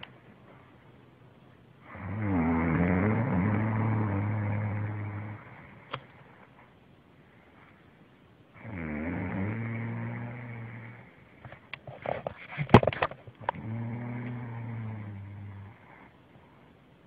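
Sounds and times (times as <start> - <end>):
woman snoring: 1.8 - 5.8, 8.6 - 11.1, 13.5 - 16.1
crackling clicking breath noises: 5.3 - 8.0, 10.8 - 16.8.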